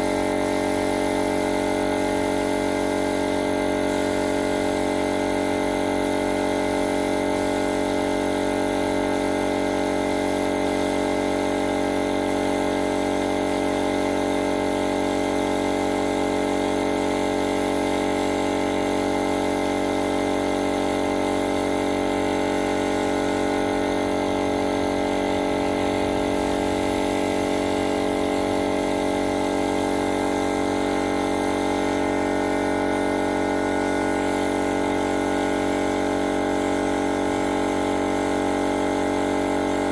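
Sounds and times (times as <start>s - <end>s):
machine humming with hiss: 21.7s - 29.4s.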